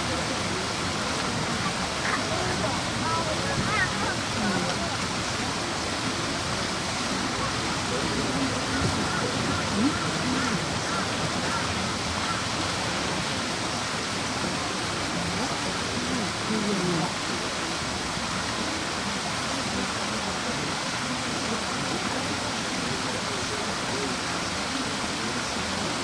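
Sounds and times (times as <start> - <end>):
faint voices murmuring: 0.0 - 26.0.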